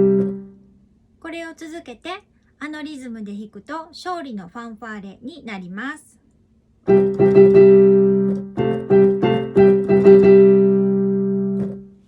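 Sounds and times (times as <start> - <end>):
piano victory fanfare: 6.9 - 11.7.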